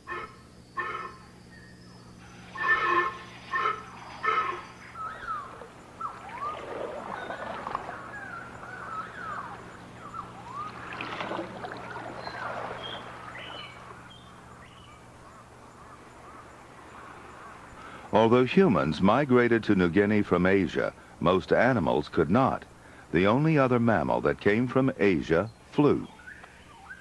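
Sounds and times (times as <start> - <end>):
faint low hum: 0.0 - 27.0
wild animal squawks and whistles: 2.2 - 10.9.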